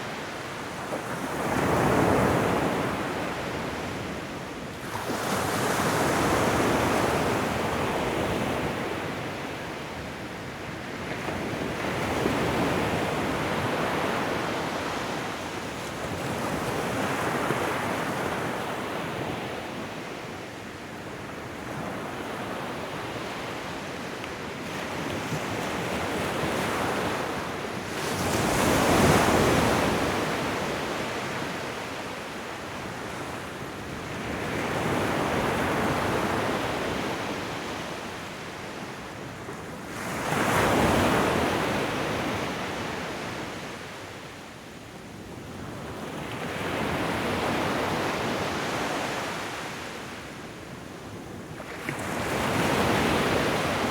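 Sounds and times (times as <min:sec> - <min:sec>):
ocean waves breaking on shore: 0:51.6 - 0:53.9.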